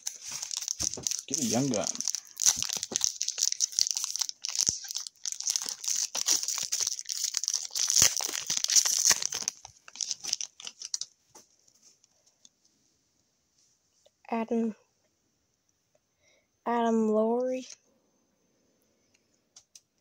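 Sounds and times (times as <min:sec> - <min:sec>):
foil wrapper tearing and crinkling: 0:00.0 - 0:11.1.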